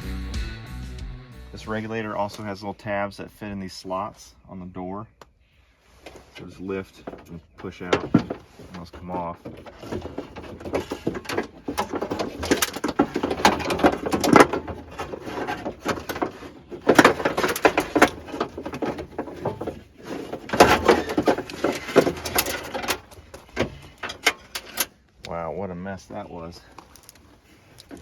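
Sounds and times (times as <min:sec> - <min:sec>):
metal rattling and scraping against door: 0:05.9 - 0:25.2, 0:26.1 - 0:28.0.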